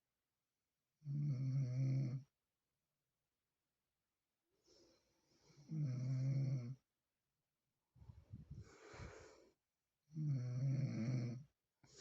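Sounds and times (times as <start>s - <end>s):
person snoring: 5.6s - 6.8s, 10.1s - 11.4s.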